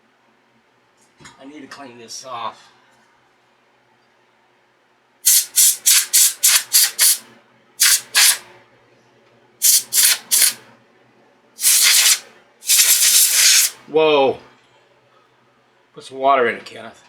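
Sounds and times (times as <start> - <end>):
spray bottle squirting: 5.3 - 7.2, 7.8 - 8.4, 9.6 - 10.6, 11.6 - 13.8.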